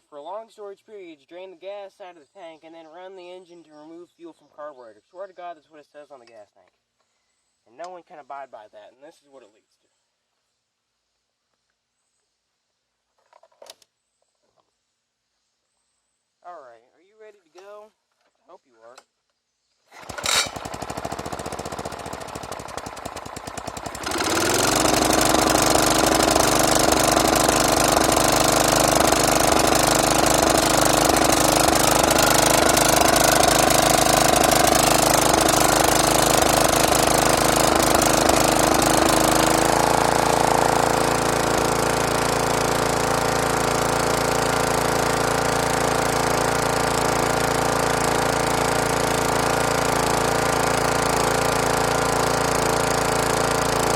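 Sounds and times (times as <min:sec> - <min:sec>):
lawn mower engine starting and running: 0:19.8 - 0:53.9.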